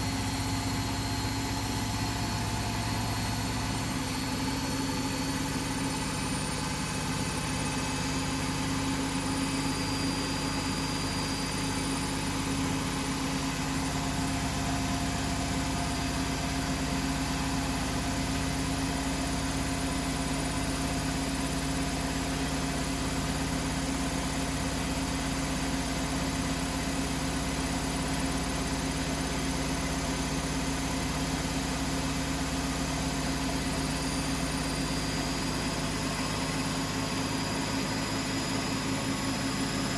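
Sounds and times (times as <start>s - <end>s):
washing machine running: 0.0s - 39.9s.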